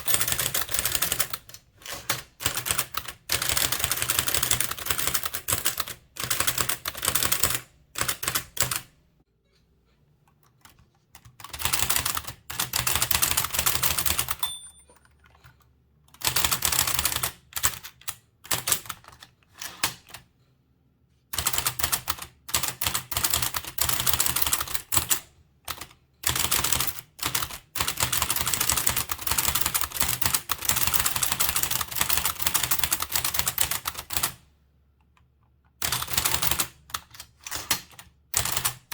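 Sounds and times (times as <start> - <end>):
typewriter keystrokes clattering: 0.0 - 8.9, 10.6 - 20.2, 21.4 - 34.4.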